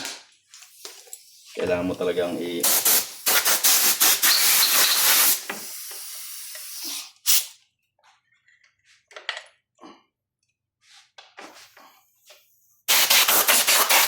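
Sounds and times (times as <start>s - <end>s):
compressed air blasts: 2.6s - 7.5s, 12.9s - 14.0s
compressed air hiss: 2.6s - 7.6s, 12.9s - 14.0s.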